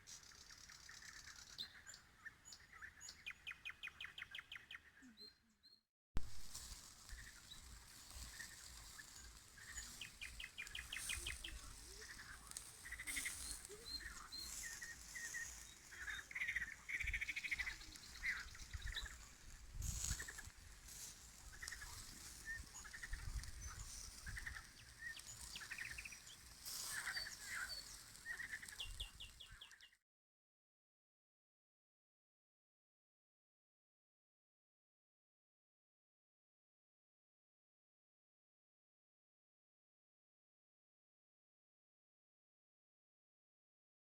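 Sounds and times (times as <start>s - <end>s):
nightingale singing: 0.2s - 5.5s, 9.2s - 19.4s, 21.6s - 29.9s
wind on microphone: 17.0s - 20.7s, 21.5s - 24.7s.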